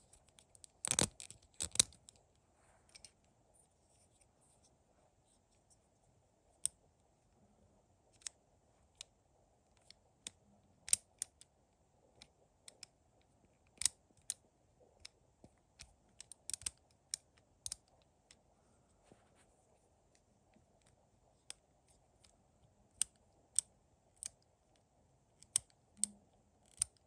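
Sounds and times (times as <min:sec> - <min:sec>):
plastic parts clicking: 0:00.2 - 0:02.2, 0:13.7 - 0:14.4, 0:15.8 - 0:17.8, 0:25.4 - 0:27.0.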